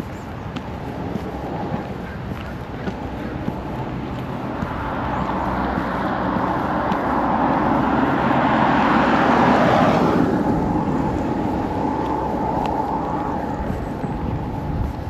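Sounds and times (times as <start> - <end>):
vehicle passing on road: 0.0 - 15.0.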